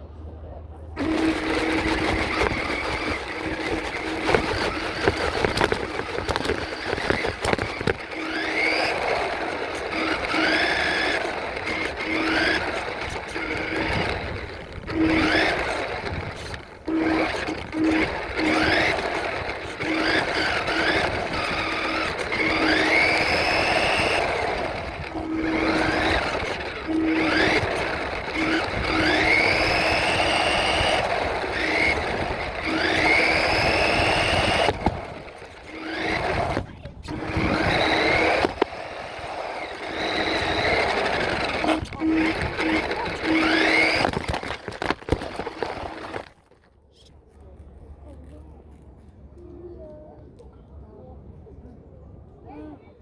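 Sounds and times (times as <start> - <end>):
toy truck motor whining: 1.0 - 46.6.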